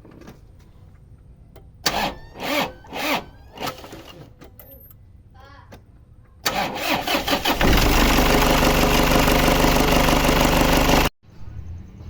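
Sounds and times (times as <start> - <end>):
diesel engine running: 6.5 - 11.1
engine knocking: 7.4 - 11.1.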